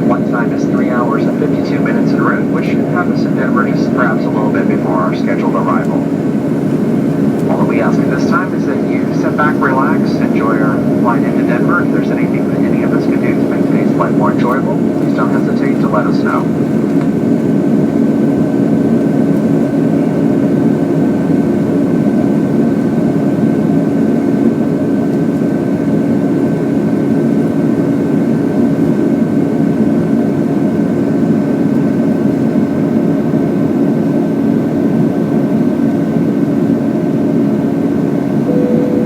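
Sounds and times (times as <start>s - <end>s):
jet engine drone in cabin: 0.0s - 39.0s
faint high tone: 38.5s - 39.0s.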